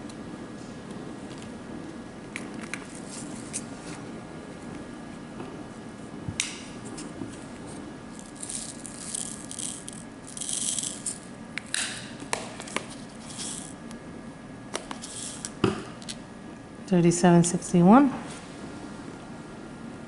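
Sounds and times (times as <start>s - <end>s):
plastic beads rattling in a tray: 8.2s - 11.3s, 13.3s - 13.8s.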